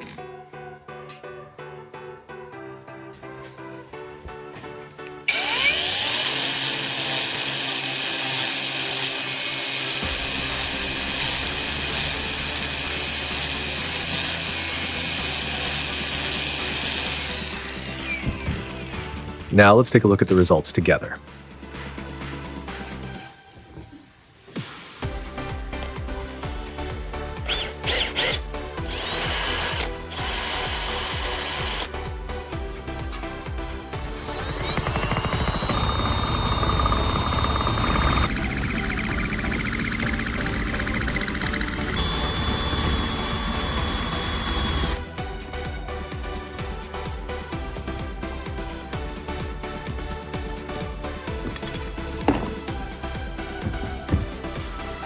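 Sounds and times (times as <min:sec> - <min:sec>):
soft piano music: 0:00.0 - 0:05.3
power drill whining: 0:05.0 - 0:19.6, 0:25.7 - 0:32.1, 0:32.8 - 0:45.2, 0:51.3 - 0:55.0
background music with beat: 0:09.7 - 0:55.0.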